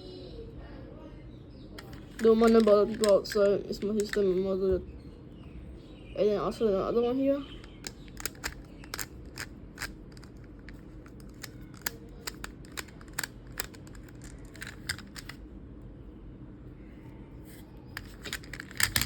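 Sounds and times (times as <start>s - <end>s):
screw clicking in plastic: 1.8s - 4.2s, 7.6s - 15.4s, 18.0s - 19.0s
plastic parts handled: 1.8s - 4.4s, 7.6s - 15.4s, 18.0s - 19.0s.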